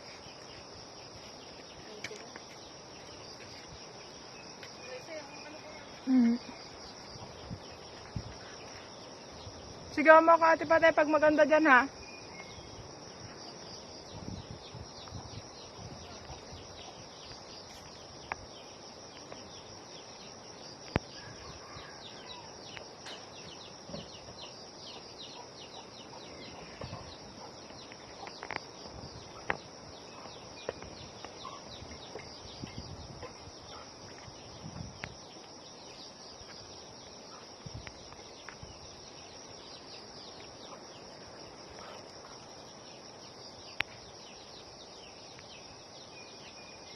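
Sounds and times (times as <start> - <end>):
insect chorus buzzing: 0.0 - 46.9.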